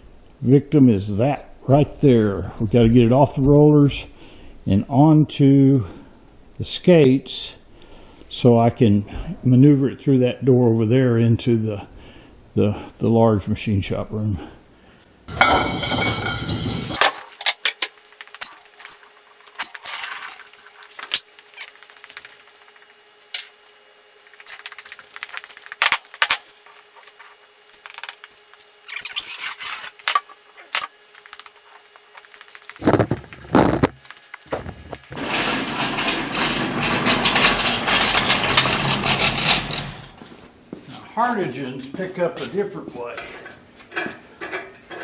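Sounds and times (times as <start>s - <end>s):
faint steady hum: 0.0s - 35.3s
scraping and shuffling: 15.3s - 17.4s, 18.3s - 23.0s, 24.2s - 45.0s
metal tools clinking: 18.4s - 21.7s, 25.8s - 26.6s, 28.9s - 31.1s.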